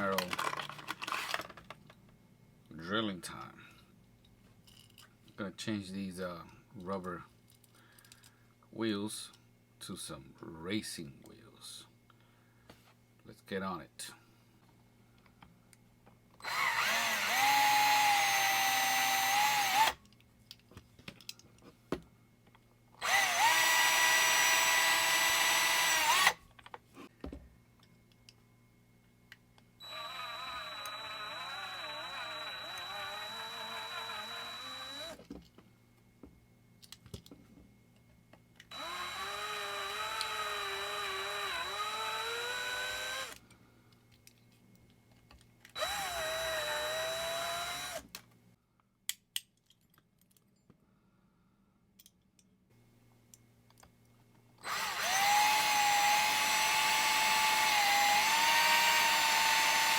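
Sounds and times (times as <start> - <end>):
small power drill drilling: 16.4 - 20.0, 23.0 - 26.4, 29.8 - 35.2, 38.7 - 43.4, 45.8 - 48.1, 54.6 - 59.9.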